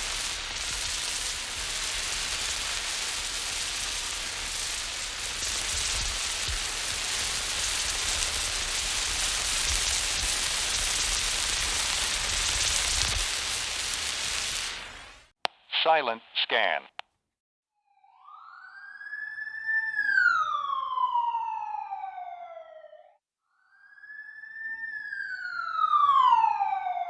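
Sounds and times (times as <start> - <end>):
road flare hissing: 0.0 - 15.3.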